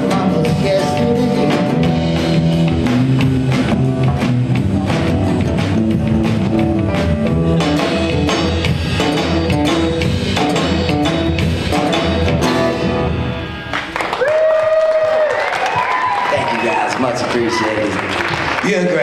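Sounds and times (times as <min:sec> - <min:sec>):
sustained bass notes: 0:00.0 - 0:14.1
drum kit beat: 0:00.0 - 0:17.6
hip hop band playing: 0:00.0 - 0:19.0.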